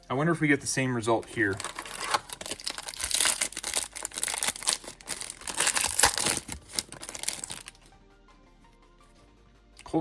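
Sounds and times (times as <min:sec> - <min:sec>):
foil wrapper crinkling and tearing: 0:01.4 - 0:07.8.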